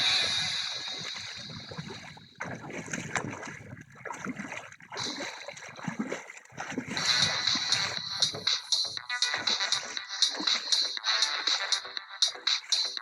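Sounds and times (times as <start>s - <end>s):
water sloshing and splashing: 0.0s - 13.0s
wind on microphone: 6.8s - 8.5s.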